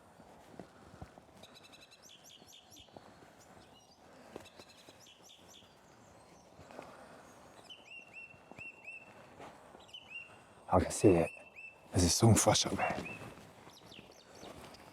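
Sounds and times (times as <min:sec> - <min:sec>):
songbird chirps and whistles: 0:01.4 - 0:10.4.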